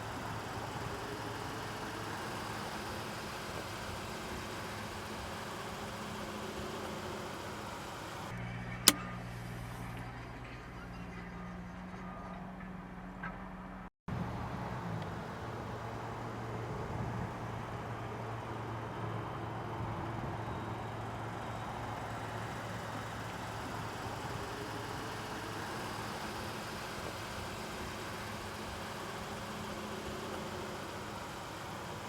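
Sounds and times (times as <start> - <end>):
suv engine idling: 0.0 - 9.0, 20.1 - 32.0.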